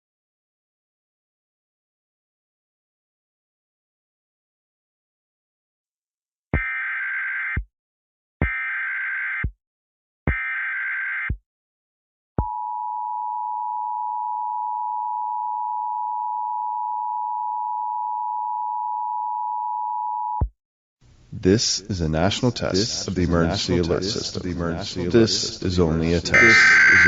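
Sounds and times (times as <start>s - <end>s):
digital data bursts: 26.4s - 27.0s
two-tone attention signal: 26.4s - 27.0s.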